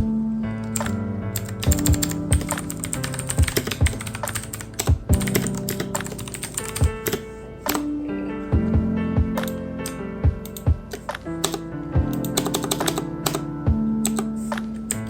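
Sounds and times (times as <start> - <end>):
background music with chords: 0.0 - 15.0
typing on computer keyboard: 0.8 - 7.9, 10.5 - 11.6, 12.2 - 13.5, 14.1 - 14.3.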